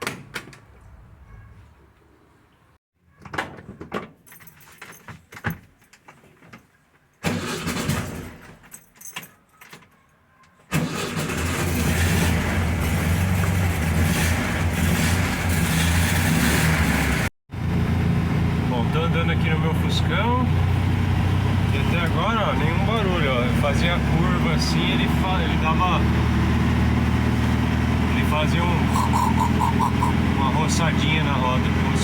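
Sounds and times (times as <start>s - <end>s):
car engine starting and running: 10.7s - 32.0s.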